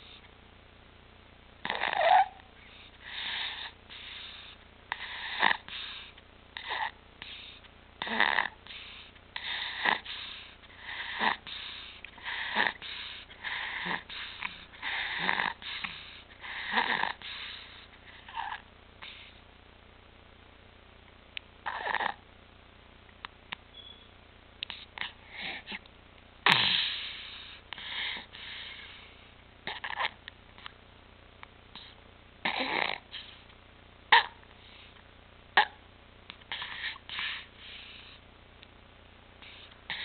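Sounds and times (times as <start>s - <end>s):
infant breathing with stridor: 1.6s - 19.4s, 24.7s - 25.8s, 26.4s - 30.2s, 31.8s - 33.4s, 36.5s - 38.2s, 39.4s - 40.0s.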